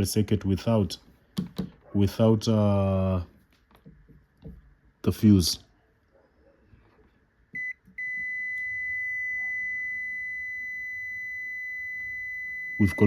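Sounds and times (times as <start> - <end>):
multimeter beeping: 7.6 - 13.0.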